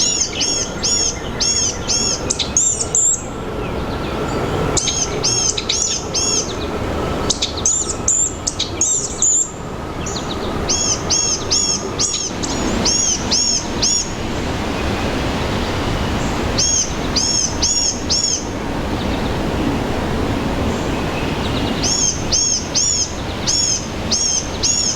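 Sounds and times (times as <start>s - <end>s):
bird calling high notes: 7.3s - 19.9s, 20.6s - 24.9s.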